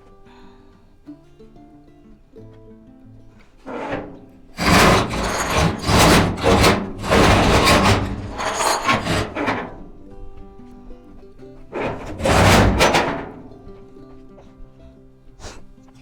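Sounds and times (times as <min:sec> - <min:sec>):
loud rough scraping strokes: 0:03.6 - 0:10.6, 0:11.6 - 0:13.8.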